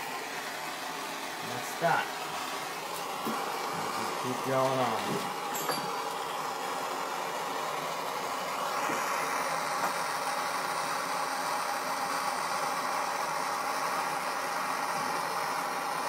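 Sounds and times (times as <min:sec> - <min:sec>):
blow torch flame hissing: 0:00.0 - 0:16.0.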